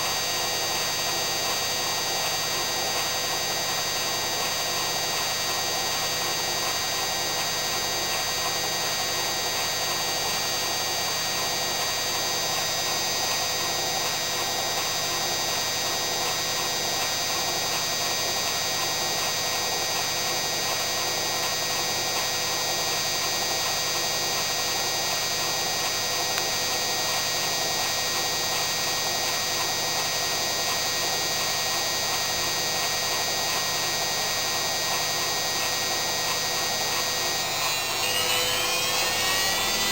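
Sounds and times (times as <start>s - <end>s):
washing machine spinning: 29.8s - 39.9s.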